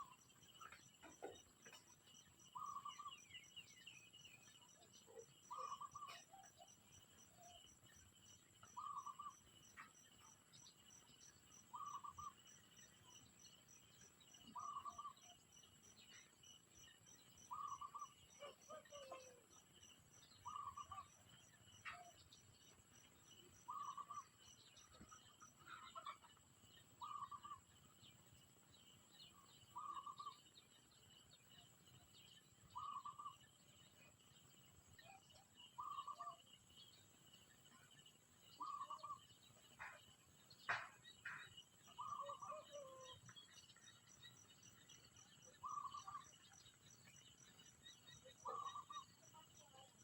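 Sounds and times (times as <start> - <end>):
insects chirping: 0.0 - 50.0
lower pulsed insect call: 0.0 - 50.0.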